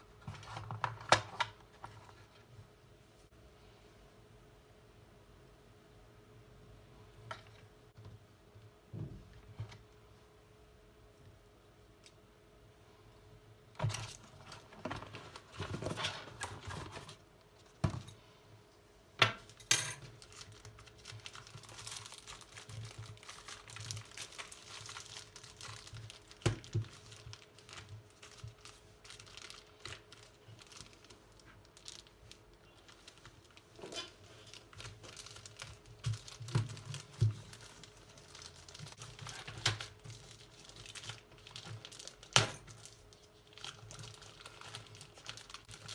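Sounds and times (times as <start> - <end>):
plastic and paper crinkling: 0.2 - 2.5, 13.8 - 18.0, 20.0 - 45.9.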